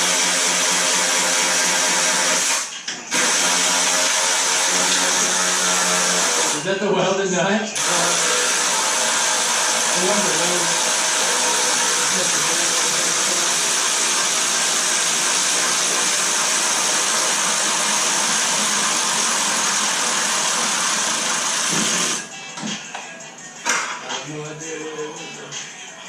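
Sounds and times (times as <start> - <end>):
shop tool hissing: 7.8 - 17.0.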